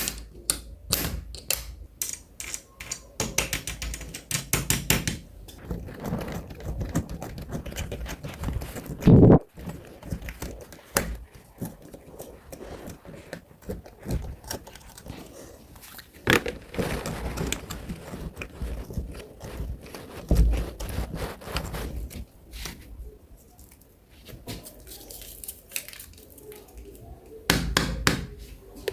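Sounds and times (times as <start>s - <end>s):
crackly scraping: 5.6s - 27.2s.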